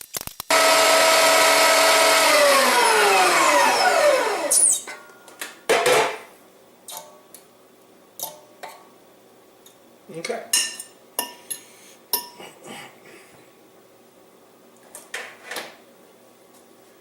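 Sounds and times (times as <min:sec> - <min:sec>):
meat grinder motor whining: 0:00.5 - 0:04.9.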